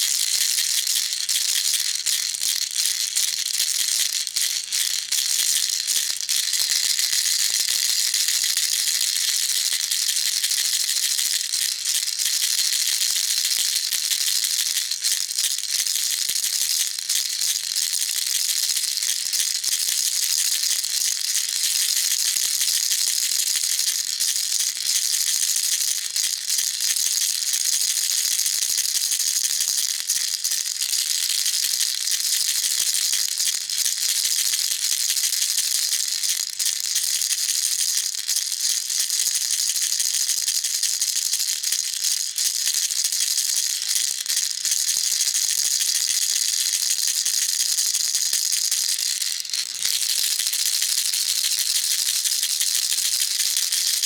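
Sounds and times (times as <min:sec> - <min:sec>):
baby rattle shaken: 0:00.0 - 0:16.2, 0:32.4 - 0:54.0.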